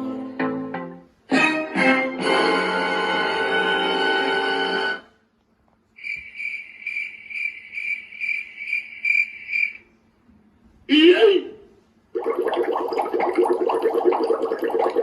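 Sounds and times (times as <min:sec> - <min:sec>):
cricket chirping: 0:06.0 - 0:09.9.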